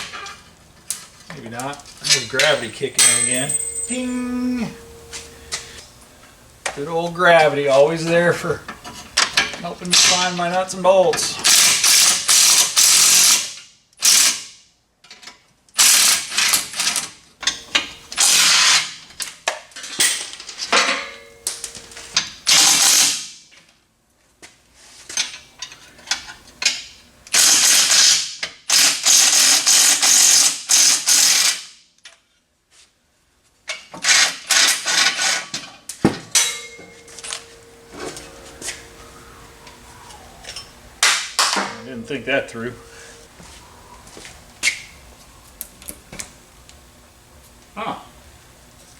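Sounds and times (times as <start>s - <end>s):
sharp metal knock: 3.0s - 4.2s.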